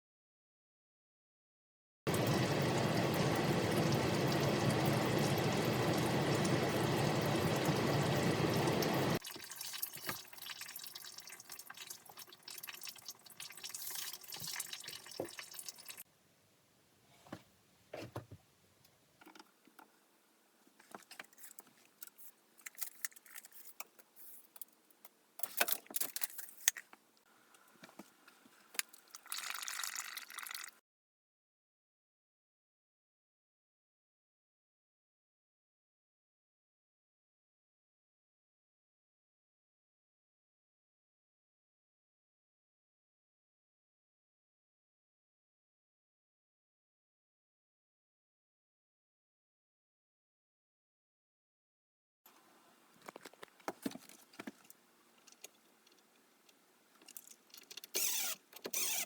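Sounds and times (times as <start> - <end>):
water dripping: 2.1 - 16.0, 28.8 - 30.8
water running through a drain pipe: 2.1 - 16.0, 28.7 - 30.8.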